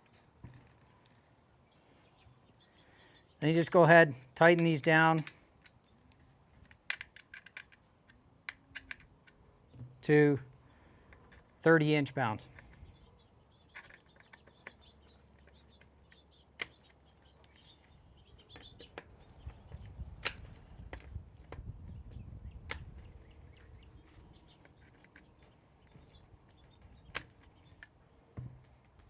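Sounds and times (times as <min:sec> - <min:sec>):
tool clicks: 0:04.5 - 0:05.8.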